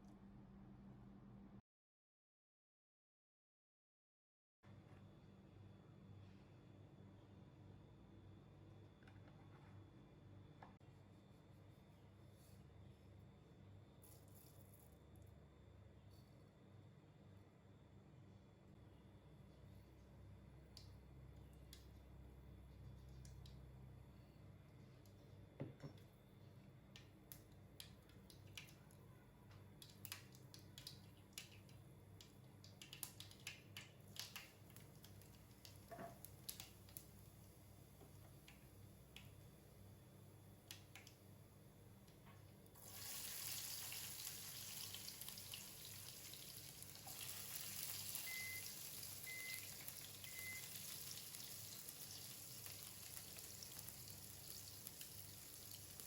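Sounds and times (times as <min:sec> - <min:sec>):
food sizzling in a pan: 0:42.8 - 0:56.0.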